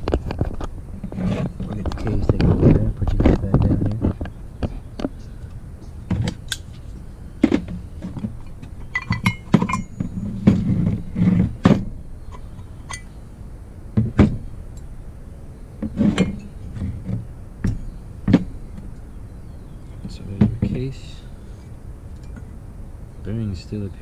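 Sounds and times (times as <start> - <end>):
metal parts knocking and clinking: 8.4 - 10.0.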